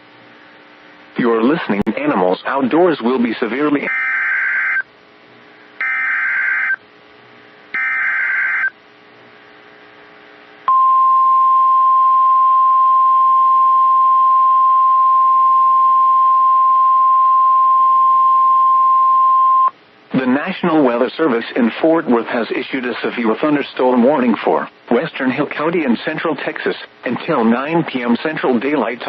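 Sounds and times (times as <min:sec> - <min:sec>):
data bursts buzzing screech: 0:03.8 - 0:04.8, 0:05.8 - 0:06.8, 0:07.8 - 0:08.7
high-pitched warning tone: 0:05.8 - 0:06.8, 0:07.8 - 0:08.7.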